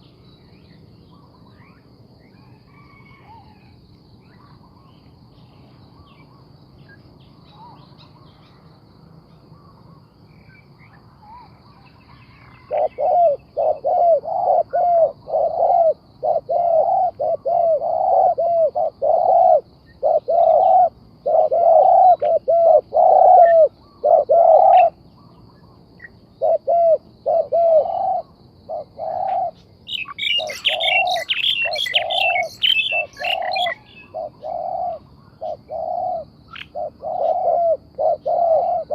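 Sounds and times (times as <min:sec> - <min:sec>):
dove cooing: 0:12.1 - 0:25.0, 0:26.4 - 0:38.9
high-pitched bird chirps: 0:29.9 - 0:34.6.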